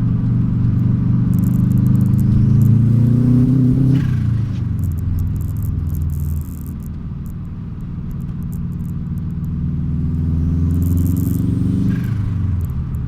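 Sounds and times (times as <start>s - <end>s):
turbocharged engine revving: 0.0s - 13.0s
turbo flutter: 0.8s - 7.4s, 10.1s - 13.0s.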